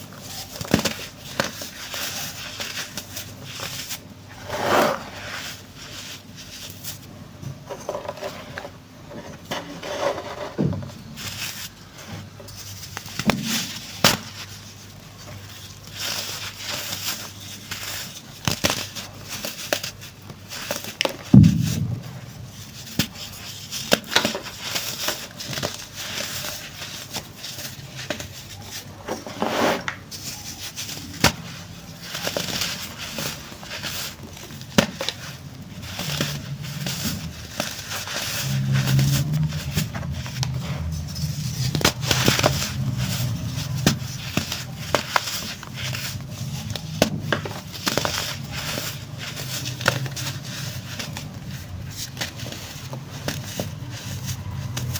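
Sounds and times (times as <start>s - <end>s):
deep thump: 21.3s - 22.7s.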